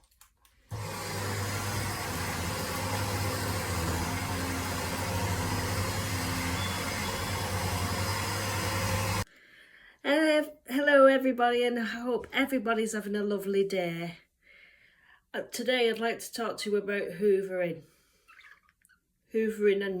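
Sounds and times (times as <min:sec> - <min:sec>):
vacuum cleaner running: 0:00.7 - 0:09.3.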